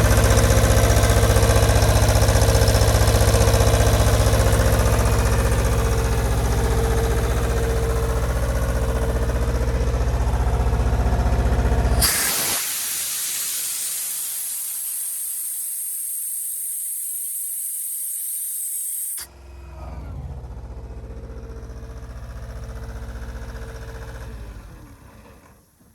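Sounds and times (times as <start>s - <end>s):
diesel compressor engine running: 0.0s - 25.8s
compressed air venting hiss: 11.9s - 19.2s.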